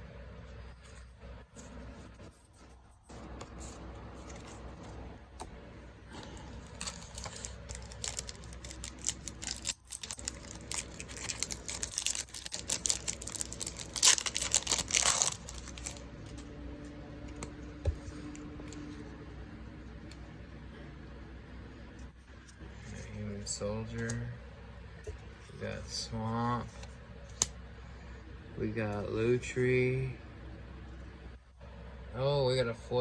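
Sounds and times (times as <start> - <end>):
playing cards being handled: 0.9 - 5.5, 6.1 - 16.5
foil wrapper crinkling and tearing: 6.2 - 16.4.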